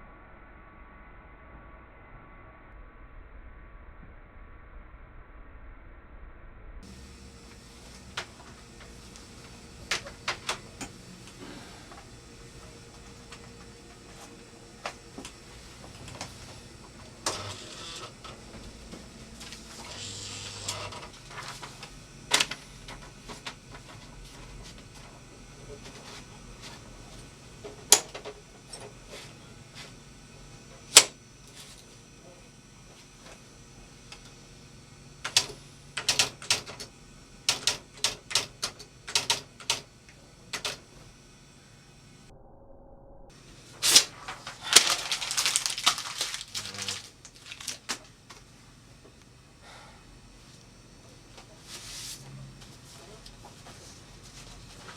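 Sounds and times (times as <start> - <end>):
typewriter mechanical rattle: 35.2 - 39.9
typewriter keys clacking: 35.3 - 36.9, 37.5 - 39.8.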